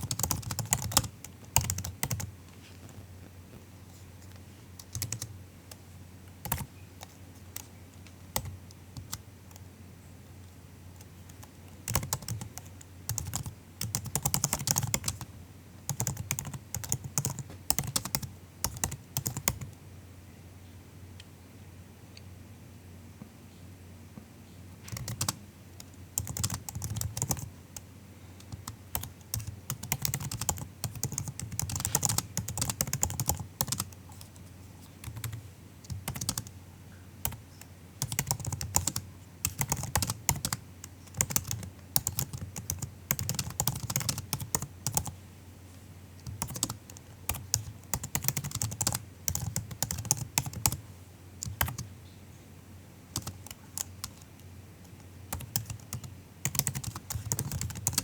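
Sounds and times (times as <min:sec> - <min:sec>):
laptop keyboard typing: 0:00.0 - 0:03.6, 0:04.3 - 0:05.8, 0:06.4 - 0:07.7, 0:08.3 - 0:09.6, 0:11.0 - 0:15.3, 0:15.9 - 0:19.8, 0:24.9 - 0:27.6, 0:28.4 - 0:36.6, 0:37.2 - 0:45.2, 0:46.2 - 0:50.8, 0:51.4 - 0:51.9, 0:53.1 - 0:58.0.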